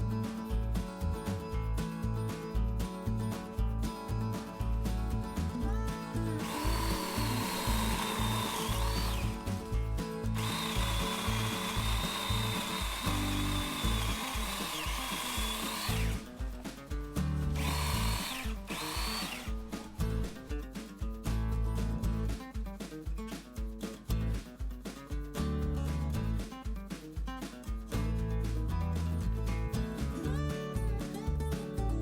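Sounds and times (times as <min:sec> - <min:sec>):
background music: 0:00.0 - 0:32.0
electric mini chainsaw whine: 0:06.4 - 0:16.4, 0:17.4 - 0:20.5.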